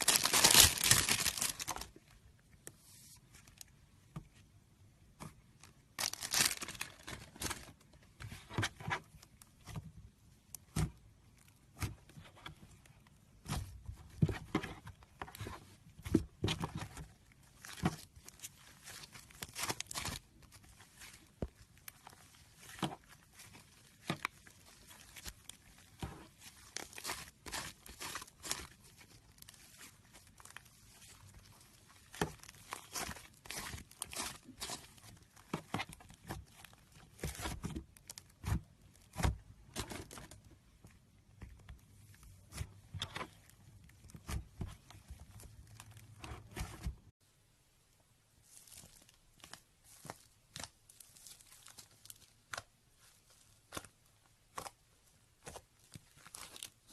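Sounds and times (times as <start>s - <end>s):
slime crackling and popping: 0.0s - 1.9s.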